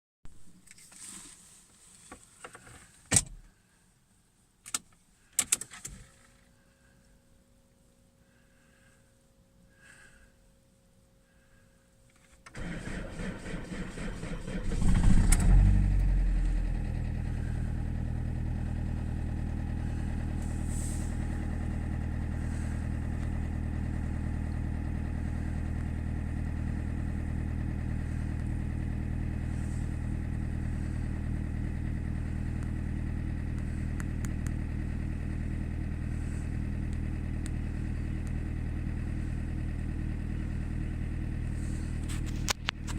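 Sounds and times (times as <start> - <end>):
starter motor cranking: 12.5 - 18.6
diesel engine idling: 12.5 - 42.9.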